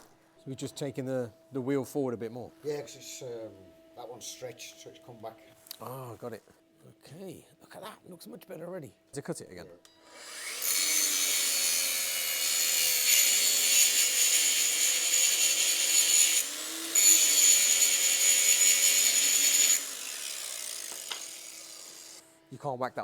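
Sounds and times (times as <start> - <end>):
angle grinder grinding steel: 10.0 - 22.4.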